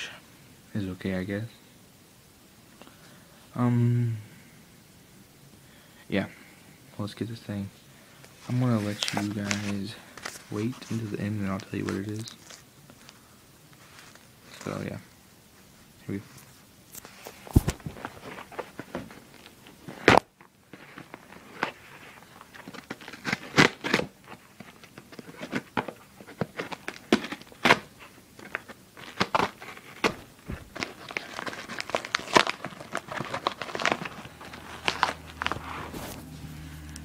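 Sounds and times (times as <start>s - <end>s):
packaging tearing and crumpling: 8.8s - 12.7s, 17.0s - 36.3s.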